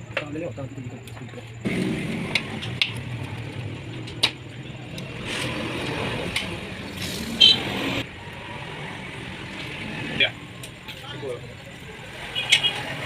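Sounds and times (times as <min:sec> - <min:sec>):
sharp metallic clicks: 0:01.7 - 0:07.6
loud squeal: 0:06.8 - 0:08.0.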